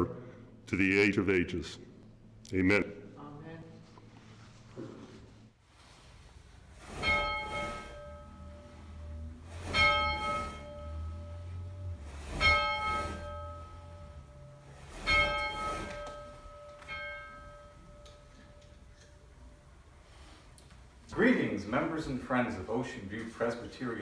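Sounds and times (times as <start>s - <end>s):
bell tolling: 7.0s - 18.9s.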